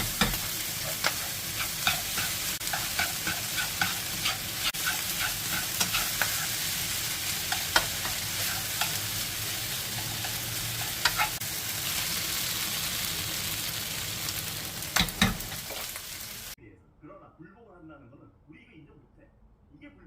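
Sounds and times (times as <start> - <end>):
spatula scraping a pan: 0.0 - 11.4
rice sizzling in a hot pan: 0.0 - 16.6.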